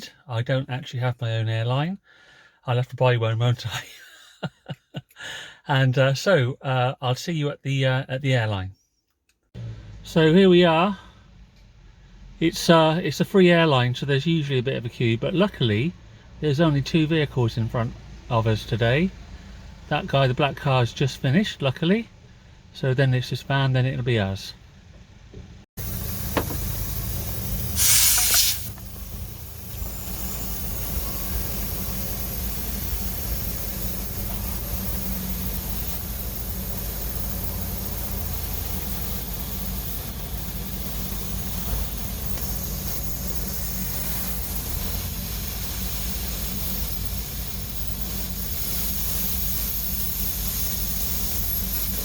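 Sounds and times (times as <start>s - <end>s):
air compressor humming: 25.3s - 52.0s.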